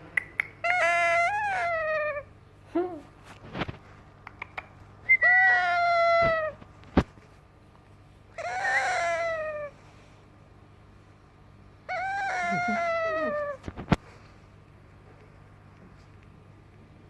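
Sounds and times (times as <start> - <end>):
parakeet meow-like calls: 0.6 - 2.3, 5.2 - 6.6, 8.4 - 9.8, 11.9 - 13.6
sharp clicks: 4.2 - 4.7.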